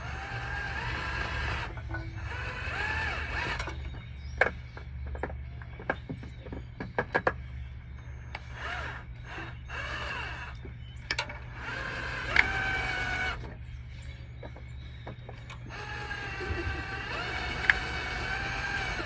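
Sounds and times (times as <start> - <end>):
cordless drill motor whine: 0.0 - 4.8, 8.1 - 13.8, 14.7 - 19.0
low steady hum: 0.0 - 19.0.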